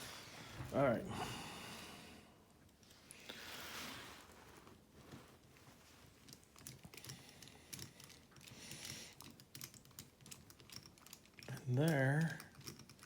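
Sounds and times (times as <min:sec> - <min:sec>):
small plastic parts clicking: 0:06.2 - 0:13.0.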